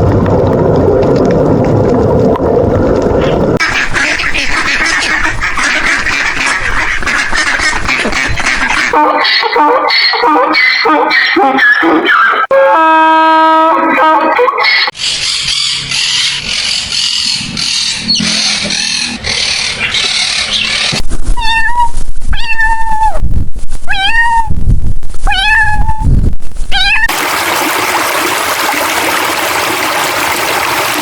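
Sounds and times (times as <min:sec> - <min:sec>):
cat meowing: 0:21.4 - 0:23.2, 0:23.9 - 0:24.6, 0:25.2 - 0:26.1, 0:26.7 - 0:27.1.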